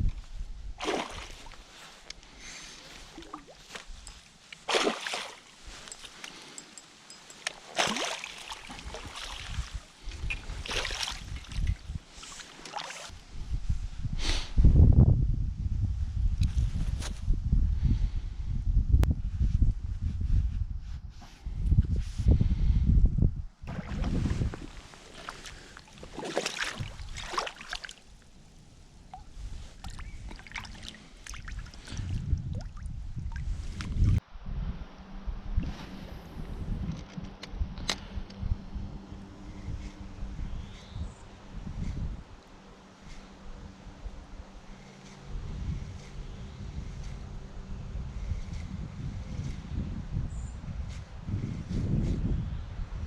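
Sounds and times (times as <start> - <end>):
wind rumbling on microphone: 0.0 - 4.5, 5.4 - 53.0
water splashing and sloshing: 0.8 - 13.2, 23.6 - 34.2.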